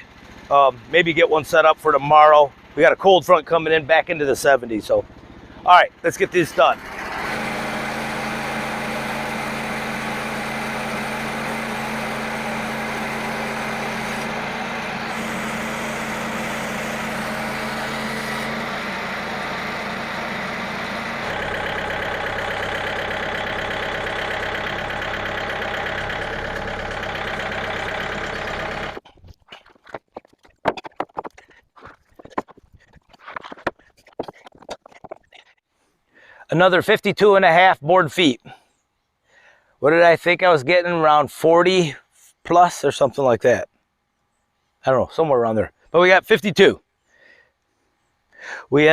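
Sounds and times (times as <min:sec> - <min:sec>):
small gasoline engine running: 0:00.0 - 0:35.4
band saw cutting log: 0:05.1 - 0:35.4.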